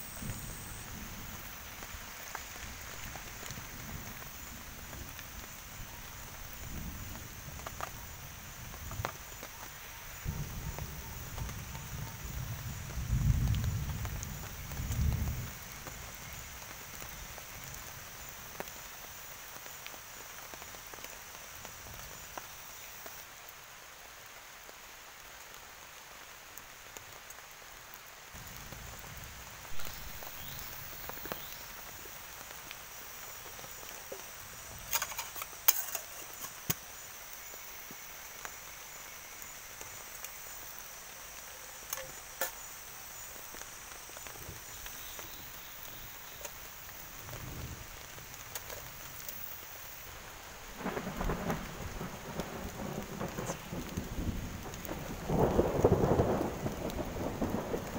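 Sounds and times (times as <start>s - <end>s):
thunder rumble: 0.0s - 18.7s, 50.6s - 57.9s
insect drone: 0.0s - 57.9s
rain and running water: 0.0s - 57.9s.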